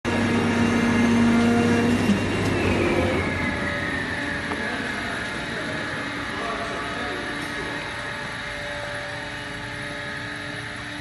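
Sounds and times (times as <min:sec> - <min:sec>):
cutting machine humming: 0:00.0 - 0:11.0
motor whine winding down: 0:00.0 - 0:11.0.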